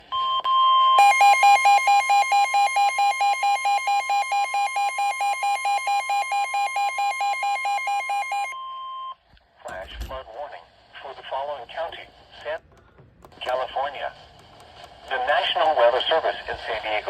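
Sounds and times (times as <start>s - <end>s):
rapid electronic beeping: 1.0s - 8.5s
steady alarm tone: 1.0s - 8.6s.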